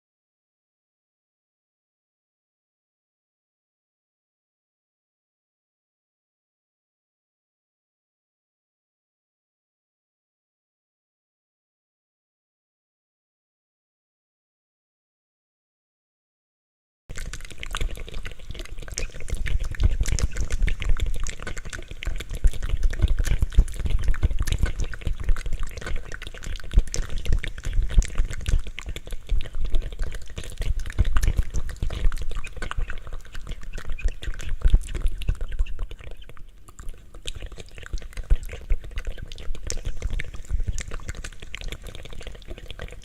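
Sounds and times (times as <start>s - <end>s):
wet mouth clicks and smacks: 17.1s - 43.0s.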